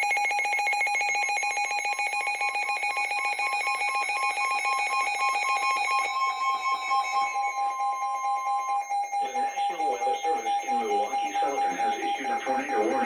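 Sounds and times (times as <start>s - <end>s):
two-tone alarm: 0.0s - 13.0s
ringing multi-tone trill: 3.7s - 13.0s.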